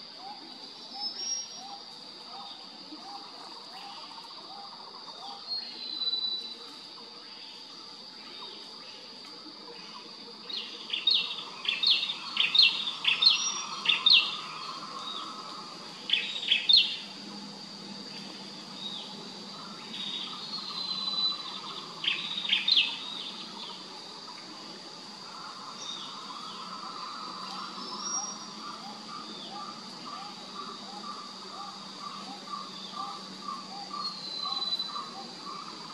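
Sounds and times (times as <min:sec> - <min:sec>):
high-pitched insect drone: 0:00.0 - 0:35.9.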